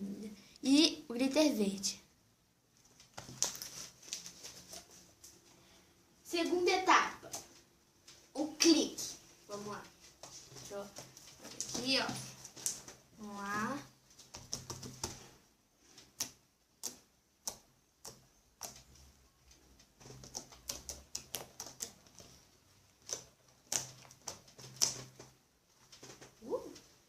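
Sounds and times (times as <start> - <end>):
slime clicking and popping: 20.2 - 22.0.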